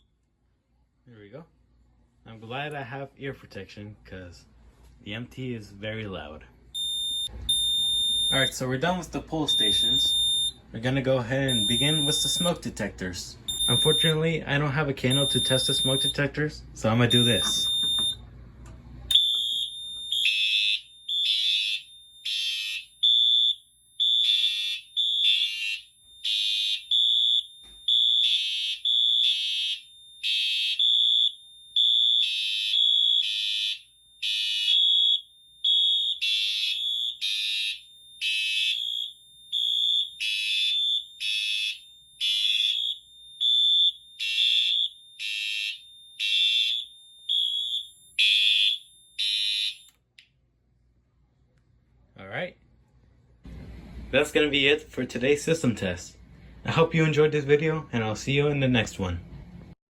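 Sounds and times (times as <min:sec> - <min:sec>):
fire alarm horns: 0:06.8 - 0:10.6, 0:11.5 - 0:12.7, 0:13.5 - 0:14.4, 0:15.0 - 0:18.2, 0:19.1 - 0:50.0.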